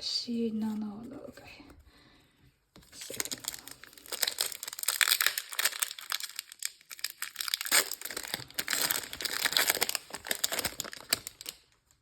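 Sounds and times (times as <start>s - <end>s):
packaging crackling: 2.9s - 12.0s.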